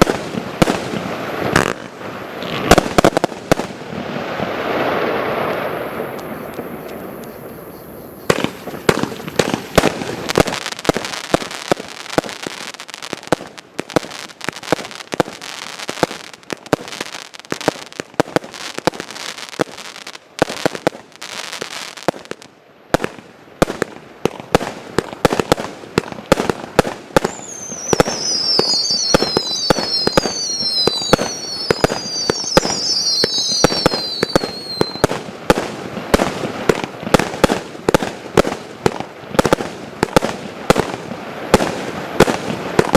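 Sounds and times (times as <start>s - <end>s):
fireworks banging and crackling: 0.0s - 42.9s
falling firework whistles: 4.5s - 10.4s, 27.2s - 35.2s.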